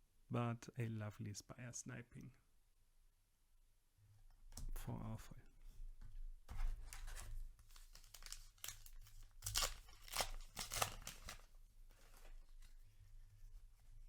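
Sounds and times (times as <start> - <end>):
foil wrapper tearing and crinkling: 7.7 - 11.6.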